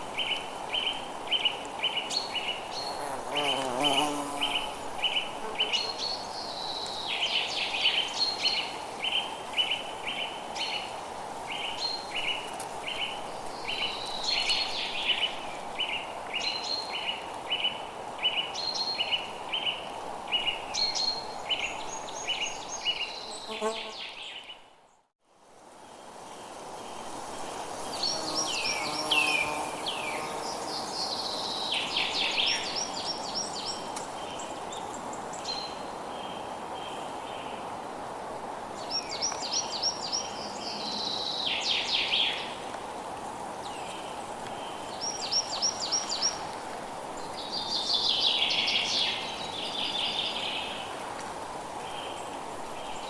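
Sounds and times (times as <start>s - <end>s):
steady background hiss: 25.3s - 53.0s.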